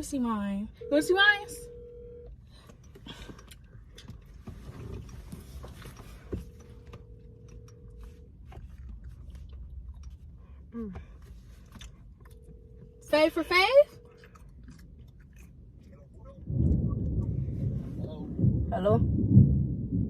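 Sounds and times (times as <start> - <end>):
telephone ringback tone: 0.8 - 2.3.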